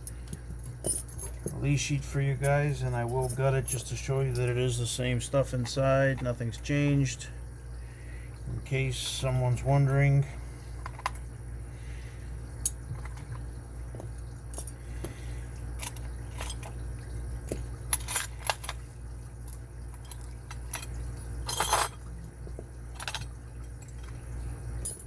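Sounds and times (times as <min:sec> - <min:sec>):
small metal parts clinking: 0:00.0 - 0:06.6, 0:10.8 - 0:11.3, 0:12.6 - 0:14.8, 0:15.7 - 0:24.2, 0:24.8 - 0:25.0
steady low hum: 0:00.0 - 0:25.0.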